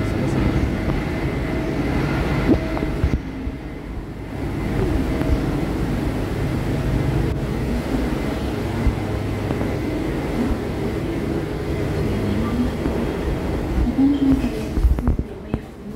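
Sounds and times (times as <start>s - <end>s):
vehicle engine drone: 0.0s - 15.6s
faint steady whine: 0.0s - 15.9s.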